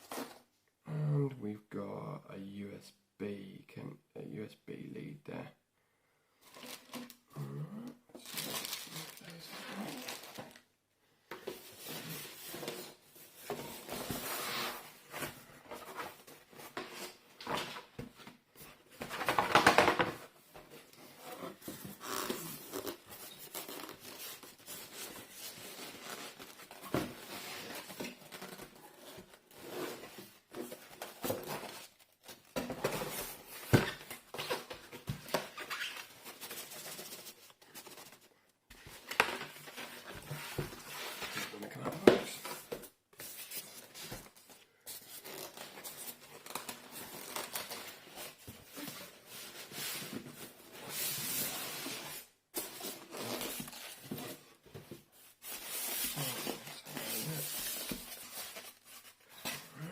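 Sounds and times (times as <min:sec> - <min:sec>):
packaging crinkling and tearing: 0:08.2 - 0:10.6.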